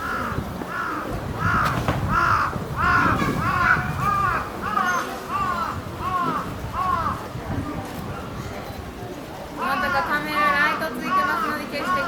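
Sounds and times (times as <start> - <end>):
harsh bird caws: 0.0 - 7.2
wind rumble on microphone: 0.0 - 10.3.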